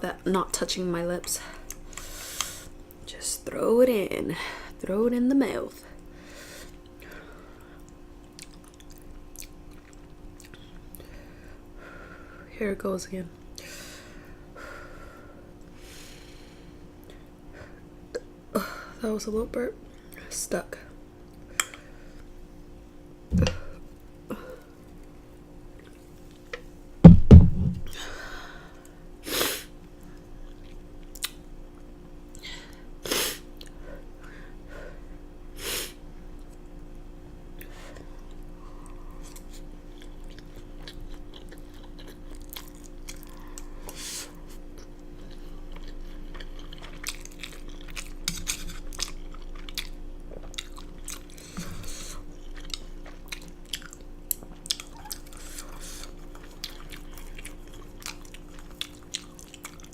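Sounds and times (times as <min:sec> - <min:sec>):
chewing and eating: 0:01.3 - 0:03.0, 0:05.7 - 0:11.8, 0:23.4 - 0:26.8, 0:29.8 - 0:32.8, 0:33.5 - 0:34.2, 0:36.3 - 0:59.9.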